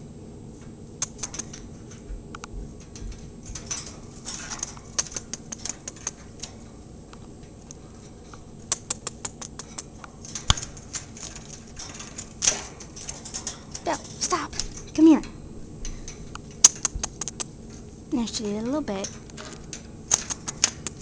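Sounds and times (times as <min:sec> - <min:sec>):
bird beak clicking: 0:01.0 - 0:01.6, 0:04.4 - 0:06.2, 0:07.7 - 0:11.3, 0:16.3 - 0:17.5, 0:20.1 - 0:21.0.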